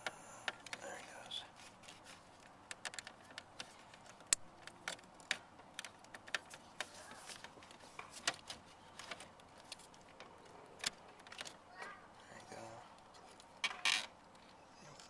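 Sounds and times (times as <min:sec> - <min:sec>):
small parts clicking and tapping: 0:01.8 - 0:12.0.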